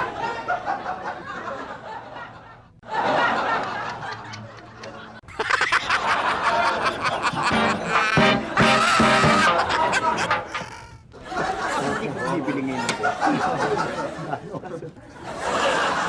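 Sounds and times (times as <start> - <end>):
studio audience laughing: 0.0 - 16.0.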